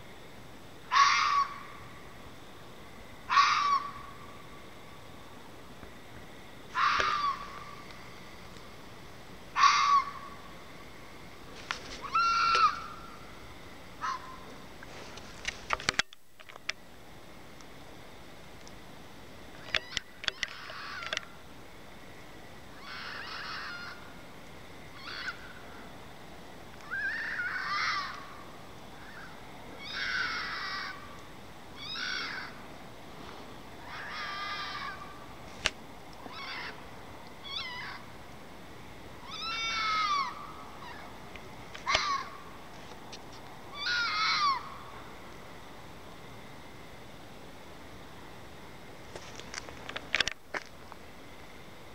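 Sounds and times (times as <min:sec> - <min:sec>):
fox screaming: 0:00.9 - 0:01.6, 0:03.3 - 0:04.0, 0:06.7 - 0:07.6, 0:09.6 - 0:10.3, 0:12.0 - 0:13.0, 0:14.0 - 0:14.4, 0:22.8 - 0:24.0, 0:25.0 - 0:25.4, 0:26.8 - 0:28.3, 0:29.0 - 0:31.0, 0:31.8 - 0:32.6, 0:33.8 - 0:35.2, 0:36.2 - 0:36.8, 0:37.4 - 0:38.1, 0:39.2 - 0:41.1, 0:41.8 - 0:42.4, 0:43.7 - 0:44.8.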